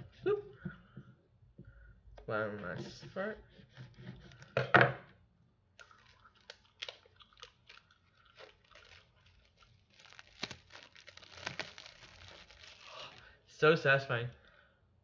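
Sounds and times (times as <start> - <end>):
plastic wrap crinkling and tearing: 5.8 - 13.4.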